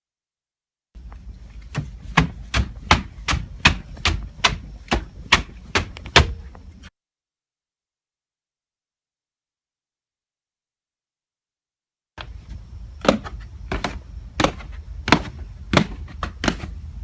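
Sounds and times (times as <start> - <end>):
running footsteps: 1.0 - 6.8.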